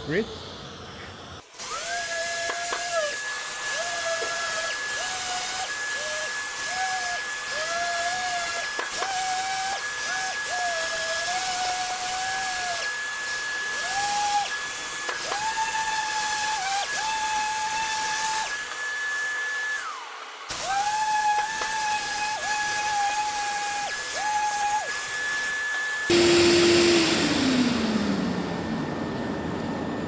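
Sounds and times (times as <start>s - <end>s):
orbital sander whining: 26.1s - 30.0s.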